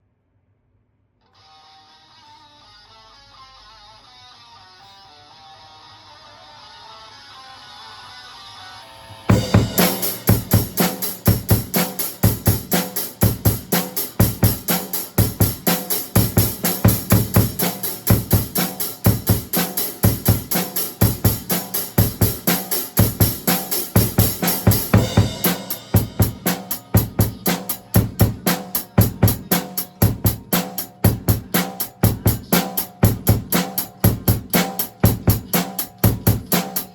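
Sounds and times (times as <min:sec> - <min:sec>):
cymbal wash: 0:08.8 - 0:36.9
kick drum: 0:09.3 - 0:22.4, 0:24.0 - 0:36.6
hi-hat strokes: 0:09.3 - 0:36.9
snare drum: 0:09.3 - 0:36.9.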